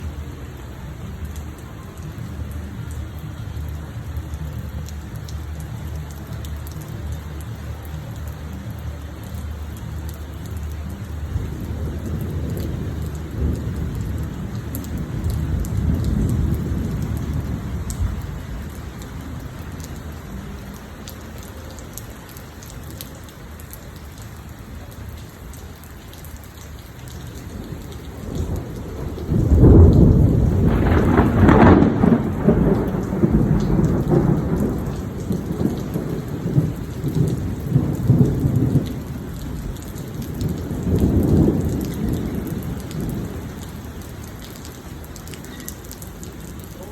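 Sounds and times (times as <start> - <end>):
steady rain falling: 0.0 - 46.9
thunder rumbling: 0.0 - 46.9
loud thunder clap: 27.6 - 39.2.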